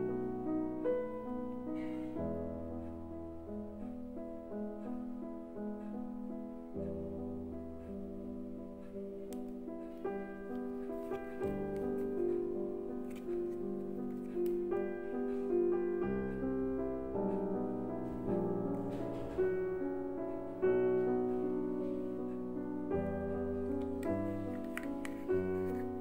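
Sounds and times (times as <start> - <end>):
piano music: 0.0 - 26.0.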